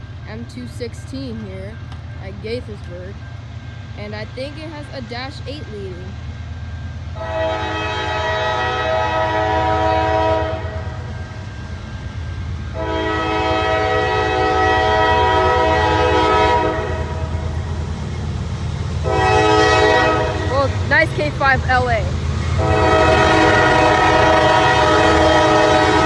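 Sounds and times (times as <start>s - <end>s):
low rumble of passing train: 0.0s - 26.0s
locomotive air horn blasts: 7.2s - 11.0s, 12.7s - 17.3s, 19.0s - 21.1s, 22.6s - 26.0s.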